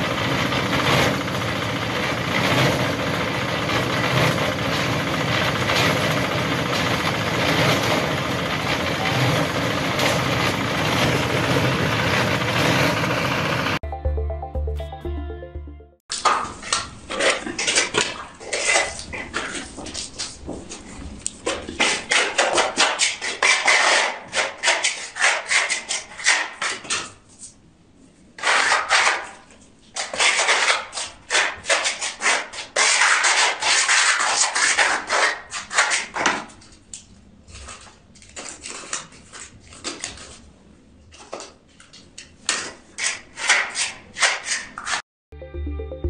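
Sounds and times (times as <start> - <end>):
hand tool scraping hard surface: 16.2 - 27.2, 28.4 - 36.6, 42.5 - 45.0.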